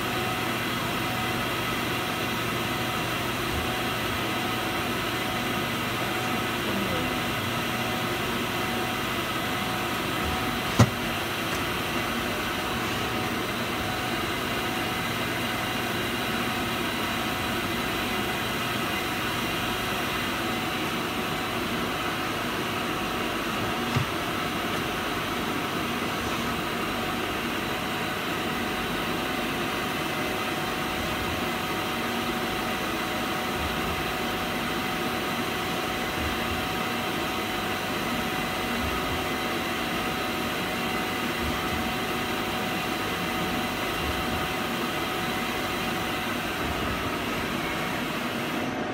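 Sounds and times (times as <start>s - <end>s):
lathe machine hum: 0.0s - 48.9s
sharp knock: 10.7s - 11.0s.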